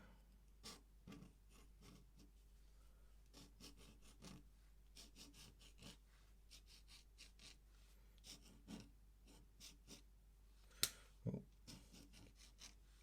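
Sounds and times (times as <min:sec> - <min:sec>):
pen scratching on paper: 0:00.6 - 0:02.3, 0:03.3 - 0:04.4, 0:05.0 - 0:07.6, 0:08.2 - 0:10.0, 0:11.6 - 0:12.8.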